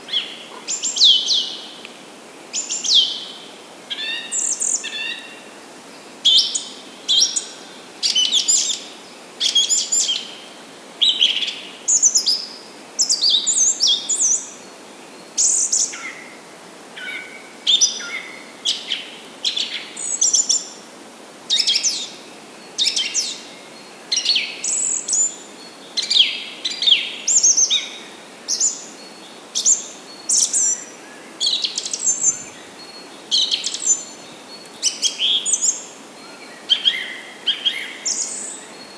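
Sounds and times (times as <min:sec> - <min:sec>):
faint steady hiss: 0:00.0 - 0:38.9
songbirds singing: 0:21.5 - 0:38.9.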